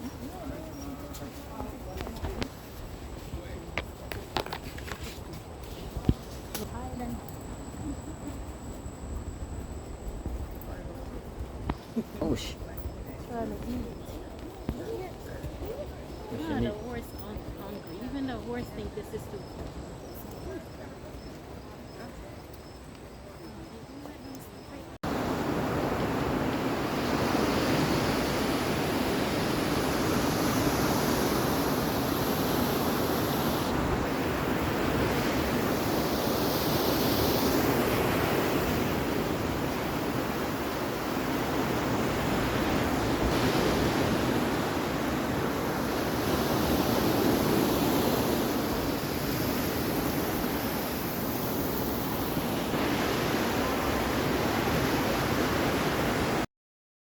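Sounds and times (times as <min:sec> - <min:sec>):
ocean surf washing onto beach: 0:25.0 - 0:56.5.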